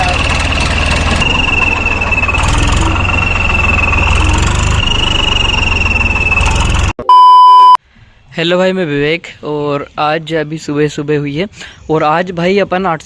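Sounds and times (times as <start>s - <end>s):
tractor diesel engine idling: 0.0s - 7.0s
high-pitched turbo whistle: 1.1s - 7.8s.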